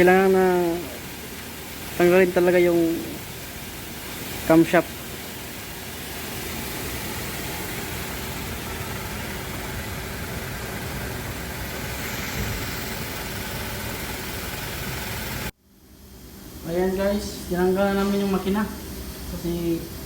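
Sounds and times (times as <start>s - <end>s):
engine running steadily: 0.0s - 15.6s.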